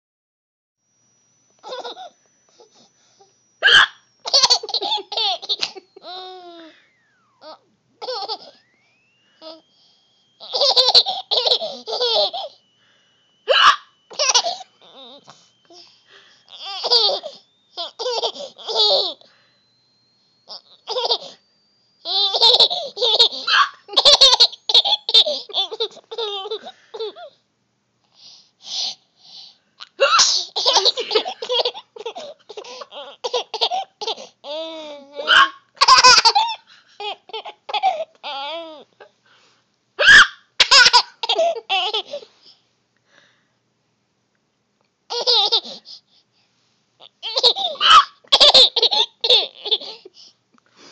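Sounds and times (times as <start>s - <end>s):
child laughing: 1.6s - 2.2s, 3.6s - 6.8s, 7.4s - 8.6s, 10.4s - 12.6s, 13.5s - 15.2s, 16.5s - 19.2s, 20.5s - 21.3s, 22.1s - 27.3s, 29.8s - 38.7s, 40.0s - 42.3s, 45.1s - 45.8s, 47.0s - 50.1s
woman hiccuping: 3.6s - 4.0s, 13.5s - 13.9s, 30.0s - 30.4s.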